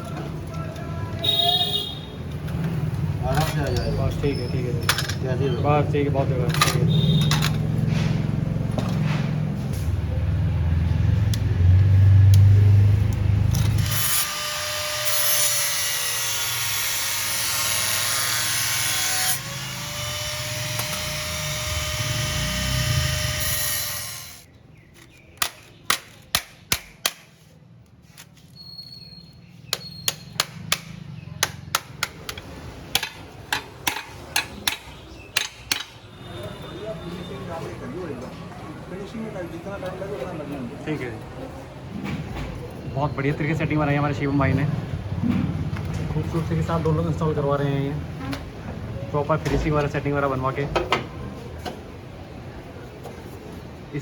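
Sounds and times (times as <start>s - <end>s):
power tool cutting steel: 13.6s - 24.5s.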